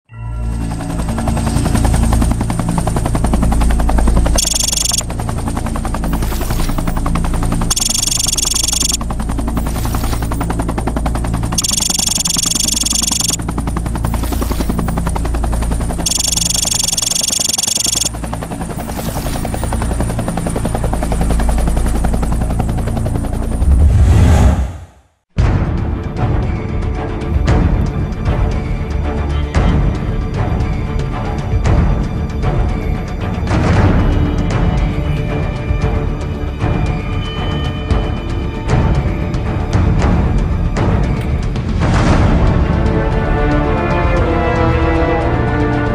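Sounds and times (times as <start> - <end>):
rapid chatter of pulses: 0.8 - 23.7
helicopter rotor chopping: 0.8 - 23.8
bright electronic tones: 4.4 - 5.0, 7.7 - 9.0, 11.6 - 13.4, 16.0 - 18.1.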